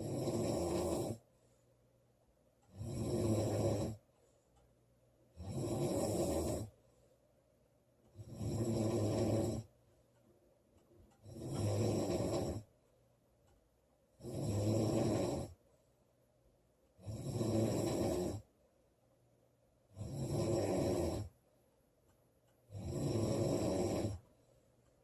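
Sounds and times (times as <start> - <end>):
woman snoring: 0.0 - 1.2, 2.7 - 4.0, 5.3 - 6.8, 8.1 - 9.7, 11.2 - 12.7, 14.2 - 15.6, 17.0 - 18.5, 19.9 - 21.4, 22.7 - 24.3.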